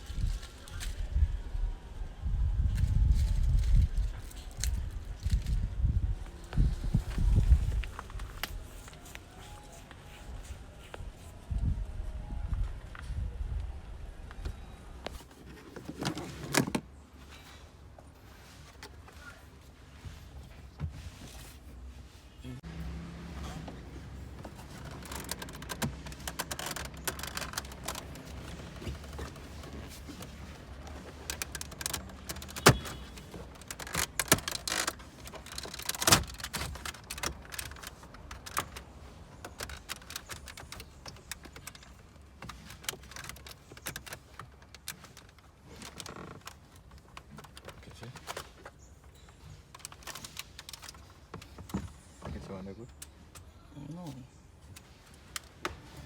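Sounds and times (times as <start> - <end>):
hand tools clicking and rattling: 24.3 - 51.8.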